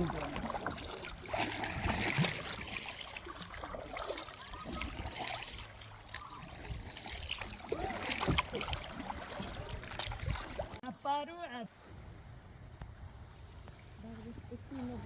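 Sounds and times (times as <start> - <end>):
small splashes and drips: 0.0 - 10.8
creek water trickling: 0.0 - 15.0.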